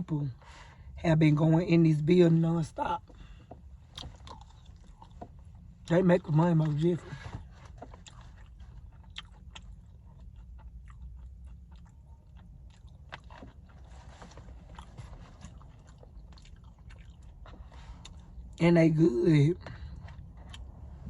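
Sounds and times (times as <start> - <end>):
person chewing food: 3.3 - 5.9, 6.6 - 18.6, 19.6 - 21.0.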